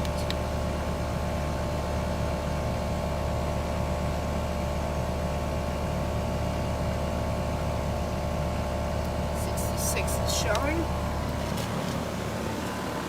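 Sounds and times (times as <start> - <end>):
air conditioner humming: 0.0 - 13.0
steady whining tones: 9.2 - 13.0.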